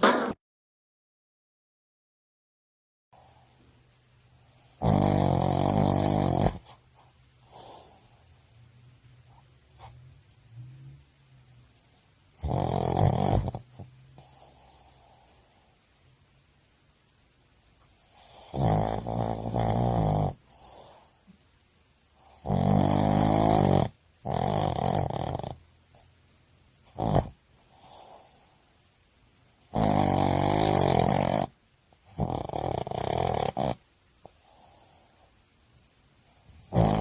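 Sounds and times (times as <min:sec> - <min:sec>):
dog snoring: 0:04.6 - 0:06.8, 0:07.4 - 0:08.2, 0:12.4 - 0:15.4, 0:18.0 - 0:21.1, 0:22.2 - 0:26.0, 0:26.8 - 0:28.5, 0:29.7 - 0:35.1, 0:36.3 - 0:37.0
dog breathing softly: 0:20.4 - 0:21.3.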